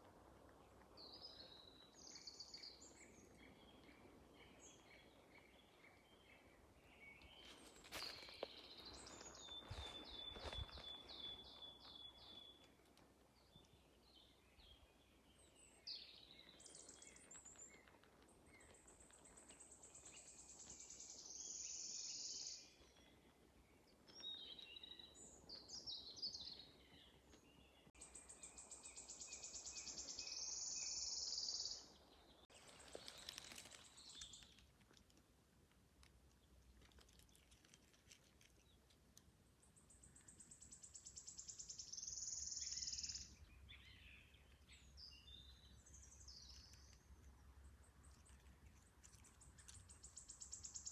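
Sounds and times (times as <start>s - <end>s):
birds chirping: 0.7s - 12.8s.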